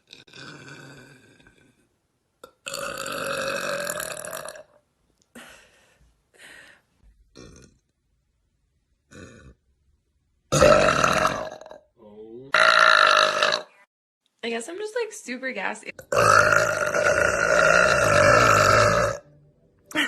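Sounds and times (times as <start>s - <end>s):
person burping: 0.0s - 1.8s, 2.4s - 4.8s, 7.3s - 7.9s, 9.1s - 9.6s, 10.5s - 13.9s, 16.0s - 19.3s.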